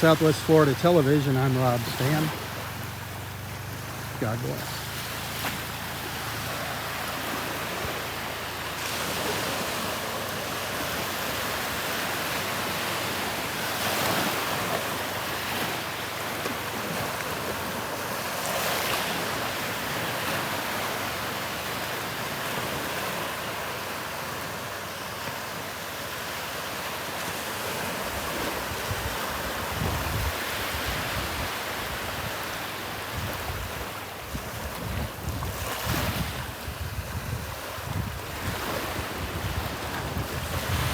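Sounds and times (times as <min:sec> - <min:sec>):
surf breaking on beach: 0:00.0 - 0:02.9, 0:03.8 - 0:40.9
wind buffeting microphone: 0:28.1 - 0:32.4, 0:33.0 - 0:40.9.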